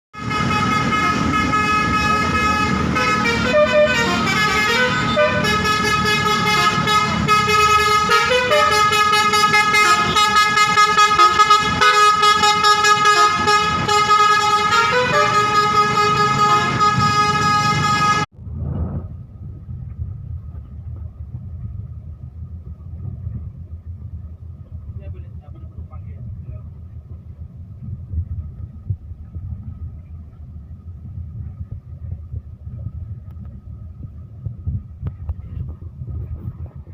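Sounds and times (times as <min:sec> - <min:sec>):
multi-tone air horn chords: 0:00.2 - 0:18.3
low rumble: 0:16.2 - 0:36.9.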